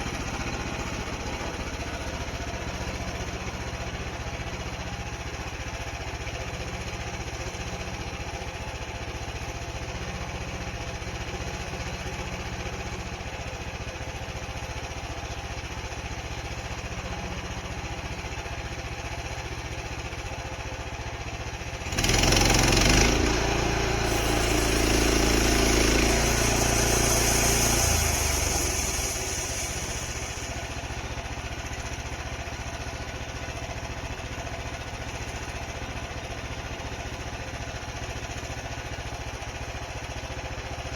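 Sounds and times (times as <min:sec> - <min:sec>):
small gas engine running: 0:00.0 - 0:40.9
hiss: 0:22.1 - 0:32.8.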